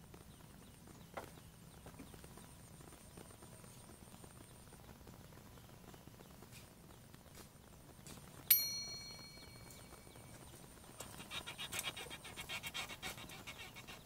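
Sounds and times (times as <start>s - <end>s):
sharp metallic ding: 8.5s - 9.9s.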